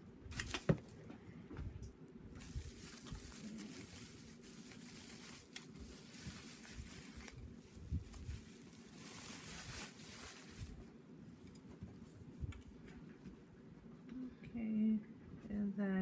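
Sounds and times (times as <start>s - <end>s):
packaging rustling: 2.4s - 10.9s.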